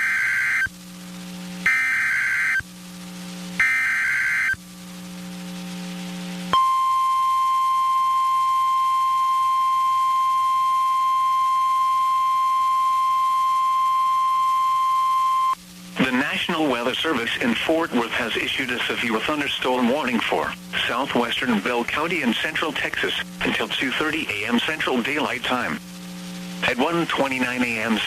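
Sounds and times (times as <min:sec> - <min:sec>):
digital data tone bursts: 0:00.0 - 0:00.7, 0:01.6 - 0:02.6, 0:03.6 - 0:04.6
steady alarm tone: 0:00.0 - 0:00.8, 0:01.6 - 0:02.7, 0:03.6 - 0:04.6, 0:06.5 - 0:15.6.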